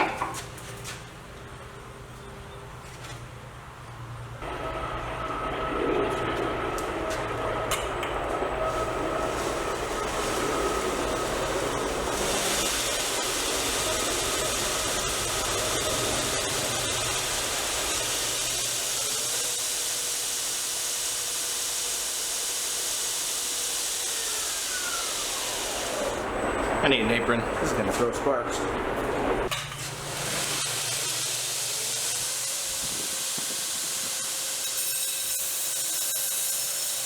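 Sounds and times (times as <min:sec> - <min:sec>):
belt grinder hissing: 0:08.7 - 0:26.3, 0:29.9 - 0:37.0.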